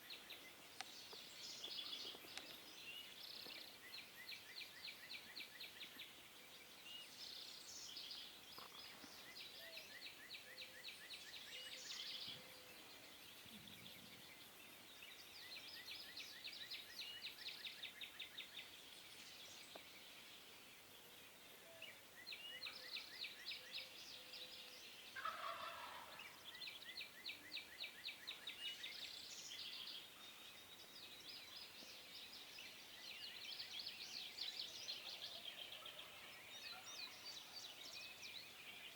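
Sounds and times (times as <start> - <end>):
faint high trilling birdsong: 20.8 - 38.9
turkey gobbling: 25.2 - 26.2.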